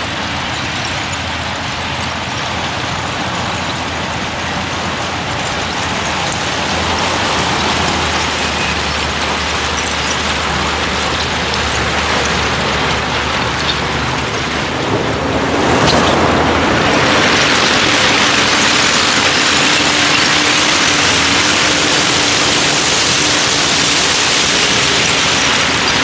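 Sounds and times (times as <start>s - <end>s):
heavy diesel machinery running: 0.0s - 26.0s.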